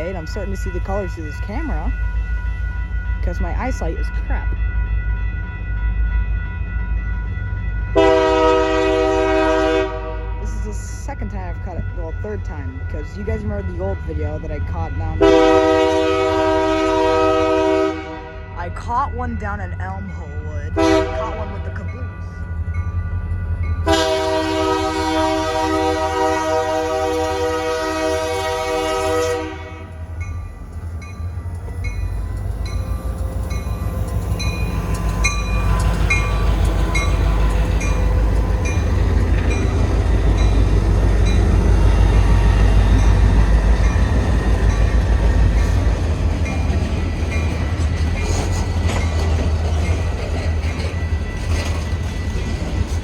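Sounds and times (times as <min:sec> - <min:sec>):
passing train rumble: 0:00.0 - 0:53.0
locomotive horn chord: 0:07.9 - 0:10.6, 0:15.2 - 0:18.6, 0:20.8 - 0:21.6, 0:23.8 - 0:30.2
train wheels clicking over rail joints: 0:30.6 - 0:53.0.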